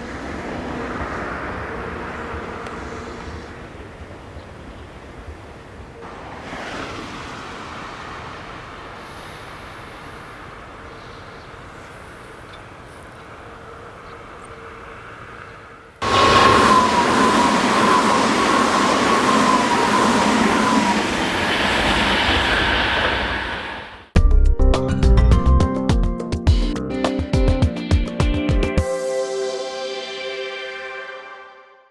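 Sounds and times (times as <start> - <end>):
train wheels rushing past: 0.0 - 4.0, 16.0 - 24.2
distant train running noise: 0.0 - 24.2.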